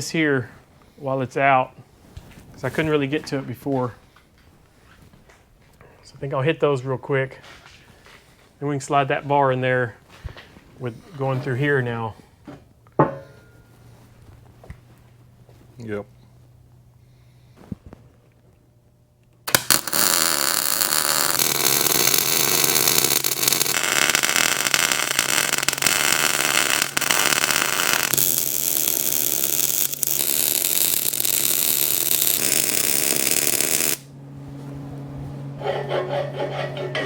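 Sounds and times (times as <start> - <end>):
welding arc crackling: 19.5 - 34.1
low machine hum: 31.8 - 37.0.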